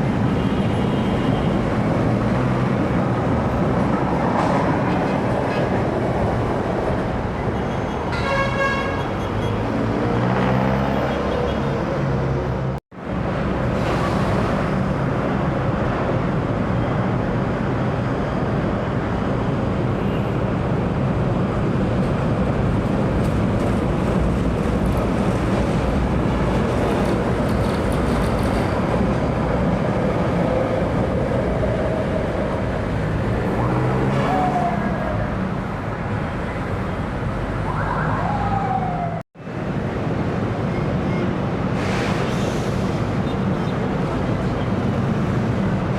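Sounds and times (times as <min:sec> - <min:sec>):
light-rail train running: 0:00.0 - 0:09.6, 0:13.0 - 0:33.2, 0:39.4 - 0:45.9
street traffic noise: 0:00.0 - 0:45.9.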